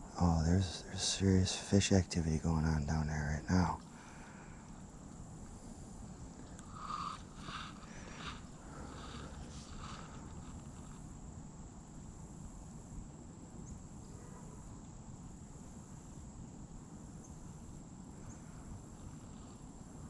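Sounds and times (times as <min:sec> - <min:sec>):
low outdoor rumble: 0:00.0 - 0:13.6
insects trilling: 0:00.0 - 0:20.0.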